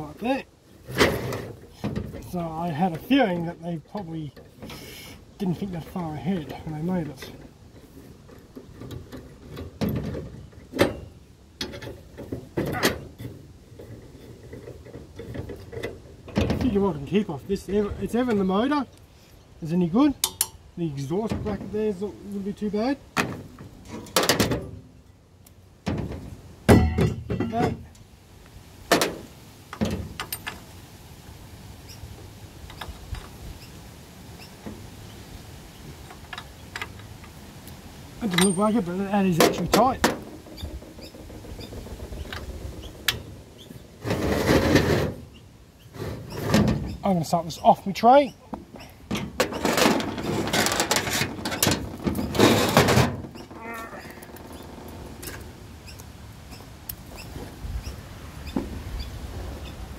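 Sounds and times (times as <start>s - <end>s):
metal parts knocking and scraping: 5.8s - 16.9s, 23.2s - 24.8s, 25.8s - 27.8s, 49.1s - 54.4s
hand tools clicking on metal: 20.2s - 20.6s.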